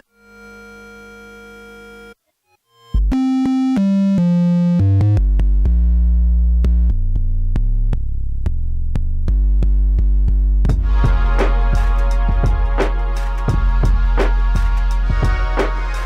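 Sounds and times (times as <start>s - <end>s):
deep bass line: 4.3s - 16.0s
drum pattern: 6.7s - 16.0s
short melodic notes: 10.8s - 16.0s.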